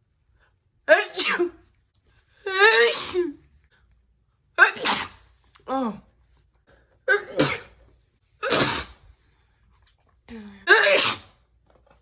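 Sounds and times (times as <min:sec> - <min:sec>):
woman sneezing: 0:00.9 - 0:01.6, 0:02.5 - 0:03.4, 0:04.6 - 0:05.3, 0:07.1 - 0:07.8, 0:08.4 - 0:09.0, 0:10.6 - 0:11.4.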